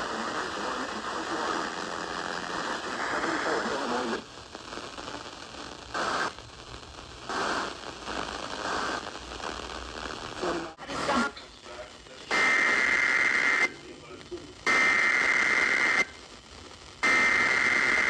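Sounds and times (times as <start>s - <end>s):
radio hiss and static: 0.0s - 18.0s
bursts of noise: 12.3s - 13.8s, 14.6s - 16.2s, 16.9s - 18.0s.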